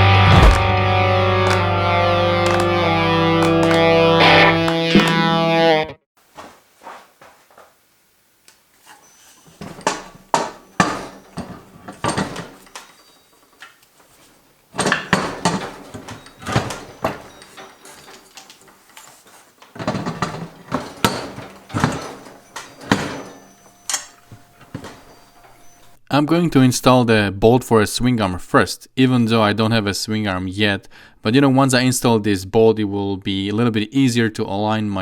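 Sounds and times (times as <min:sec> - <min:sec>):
metal parts knocking and clanking: 0:00.3 - 0:00.8, 0:01.4 - 0:05.3, 0:08.9 - 0:26.0.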